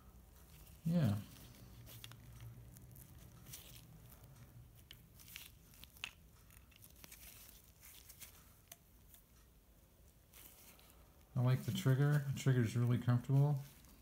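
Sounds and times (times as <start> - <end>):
handling clicks and rustles: 0.3 - 14.0.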